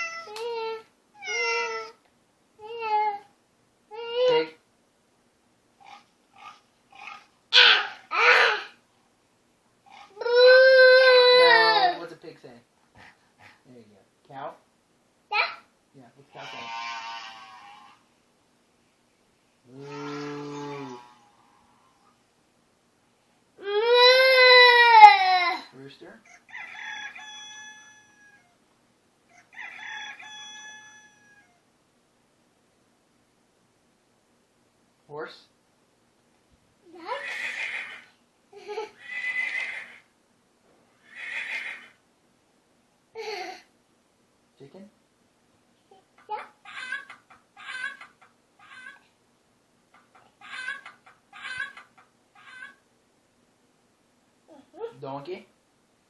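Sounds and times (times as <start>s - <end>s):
rooster crowing: 26.3s - 28.6s, 29.3s - 31.6s.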